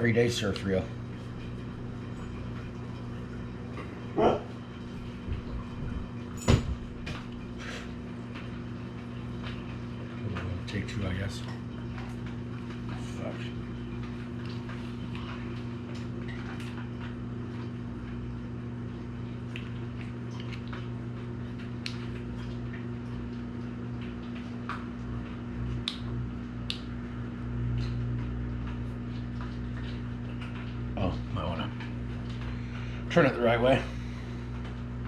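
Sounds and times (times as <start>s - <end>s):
low electrical hum: 0.0s - 35.0s.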